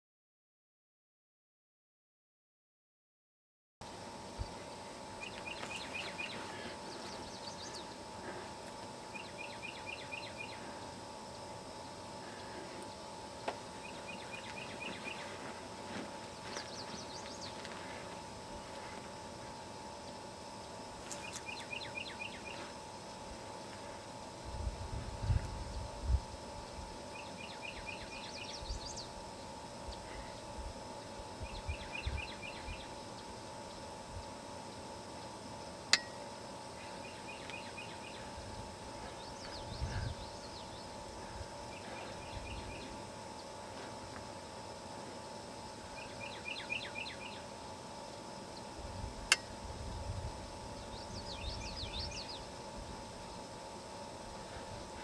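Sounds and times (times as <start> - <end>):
steady outdoor hum: 3.8 - 55.0
songbird chirping: 5.2 - 8.0, 9.1 - 10.7, 13.8 - 15.5, 21.1 - 22.7, 27.1 - 29.2, 36.8 - 38.3, 41.7 - 43.6, 46.0 - 47.5
faint low rumbling: 22.6 - 27.0, 38.2 - 44.3.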